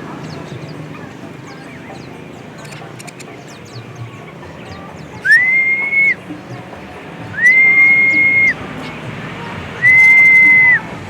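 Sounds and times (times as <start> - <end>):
small birds chirping: 0.0 - 11.0
long sliding whistle notes: 5.2 - 6.2, 7.3 - 8.6, 9.8 - 10.8.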